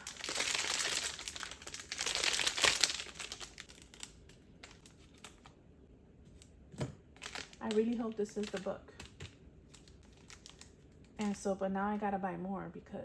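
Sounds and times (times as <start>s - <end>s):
plastic wrapping crinkling: 0.0s - 5.6s, 7.1s - 11.5s.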